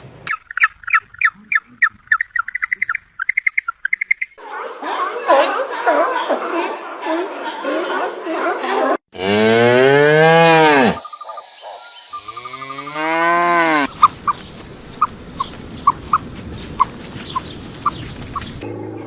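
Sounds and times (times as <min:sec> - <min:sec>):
cow mooing: 0:09.2 - 0:11.0, 0:12.3 - 0:13.9
hissy background: 0:11.4 - 0:18.6.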